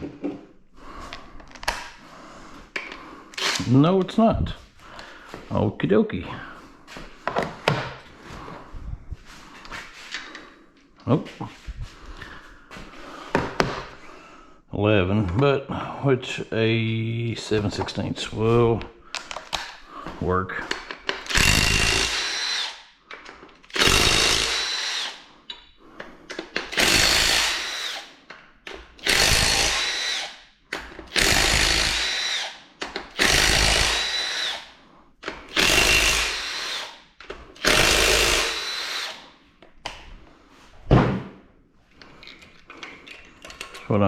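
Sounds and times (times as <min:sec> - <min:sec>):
power tool whining: 0:21.2 - 0:22.8, 0:23.7 - 0:25.3, 0:26.6 - 0:28.1, 0:29.0 - 0:30.4, 0:31.1 - 0:34.7, 0:35.5 - 0:37.0, 0:37.6 - 0:39.2.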